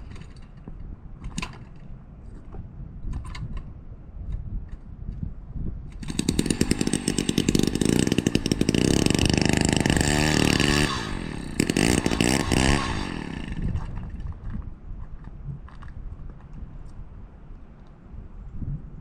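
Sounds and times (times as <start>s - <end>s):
ice auger drilling: 5.9s - 14.4s.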